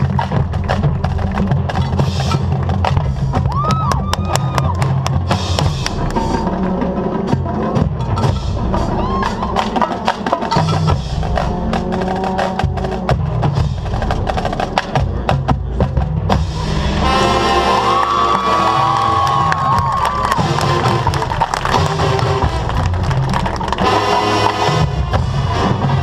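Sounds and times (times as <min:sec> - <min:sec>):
marching band playing: 0:00.0 - 0:26.0
horns playing held chord: 0:16.5 - 0:19.2, 0:20.2 - 0:26.0.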